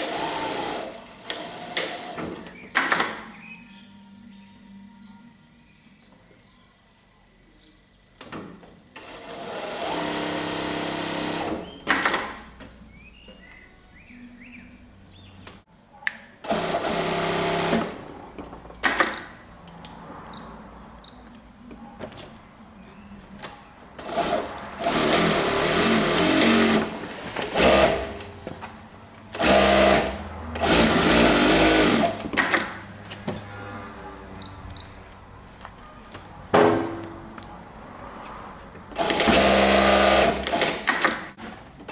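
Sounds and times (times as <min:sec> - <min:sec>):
electric sewing machine stitching: 0:00.0 - 0:02.4, 0:09.0 - 0:12.2, 0:16.5 - 0:18.0, 0:24.0 - 0:28.3, 0:29.3 - 0:32.7, 0:39.0 - 0:41.2.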